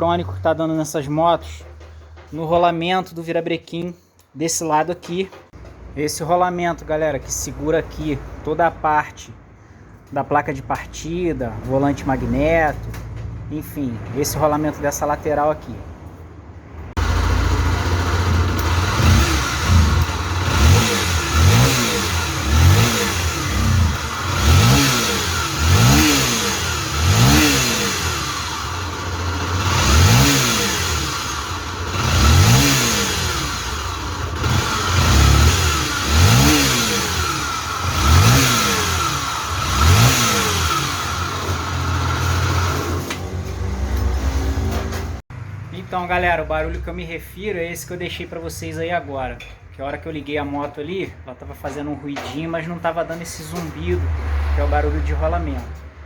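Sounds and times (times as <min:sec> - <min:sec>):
motorcycle engine revving: 0:17.0 - 0:45.7.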